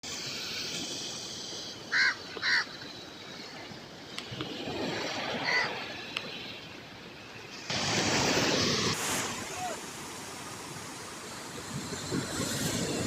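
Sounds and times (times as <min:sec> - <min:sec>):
bird calling harshly: 0:01.9 - 0:02.7, 0:05.4 - 0:05.8.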